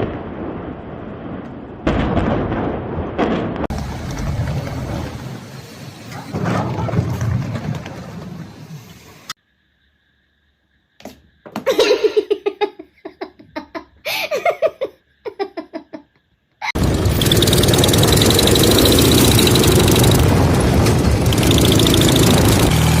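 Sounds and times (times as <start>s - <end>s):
child laughing or squealing: 11.6s - 16.8s
loud engine running: 16.8s - 23.0s.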